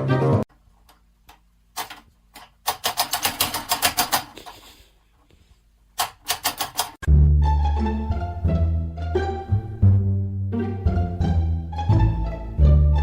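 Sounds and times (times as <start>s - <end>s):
music: 0.0s - 0.5s, 7.1s - 13.0s
sharp quick clicks: 6.0s - 7.0s.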